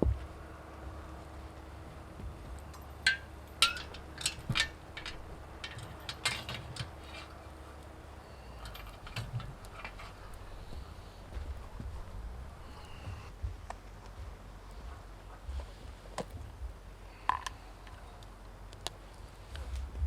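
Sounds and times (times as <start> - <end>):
low steady rumble: 0.0 - 20.0
sharp clicks and knocks: 2.2 - 8.0, 8.6 - 14.2.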